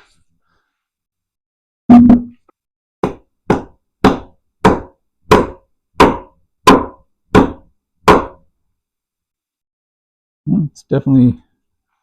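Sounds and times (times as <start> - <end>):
axe chopping log: 3.0 - 8.4.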